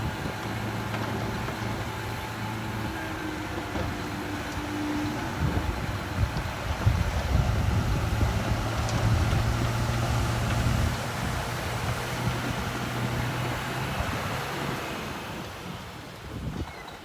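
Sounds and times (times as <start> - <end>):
bulldozer diesel engine humming: 0.0 - 17.0.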